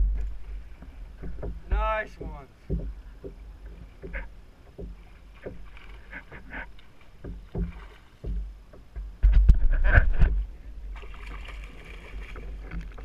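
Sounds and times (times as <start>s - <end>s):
knocks against kayak hull: 0.0s - 5.9s, 7.2s - 10.4s
small water splashes: 0.0s - 8.8s, 10.8s - 13.0s
wind rumble on microphone: 7.2s - 13.0s.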